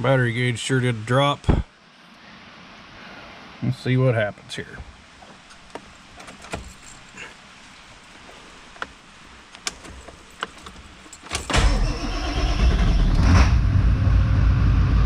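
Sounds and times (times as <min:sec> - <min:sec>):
pickup engine starting and running: 0:09.7 - 0:15.0.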